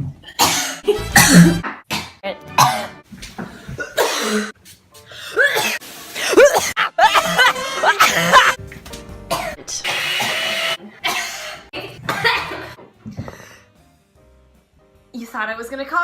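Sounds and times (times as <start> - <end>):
woman coughing: 0.4 - 3.0, 3.8 - 4.5, 5.4 - 8.6, 9.3 - 9.6, 11.0 - 12.7.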